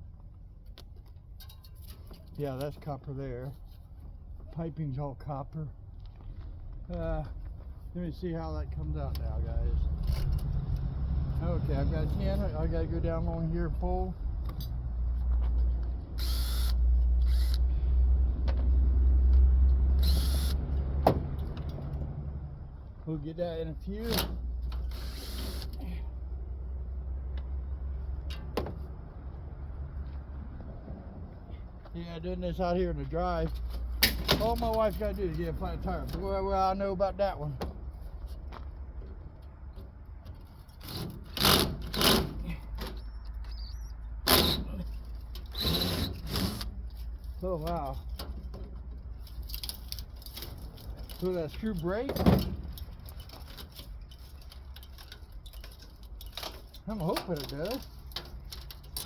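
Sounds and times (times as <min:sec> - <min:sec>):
steady low rumble: 0:02.4 - 0:40.6
metal scraping rasps: 0:16.2 - 0:17.6, 0:20.0 - 0:20.8, 0:23.3 - 0:26.0, 0:40.4 - 0:59.0.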